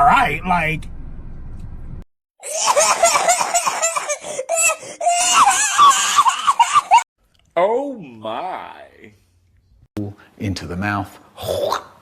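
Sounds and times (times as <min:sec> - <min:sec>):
person laughing hard: 0:02.4 - 0:07.0.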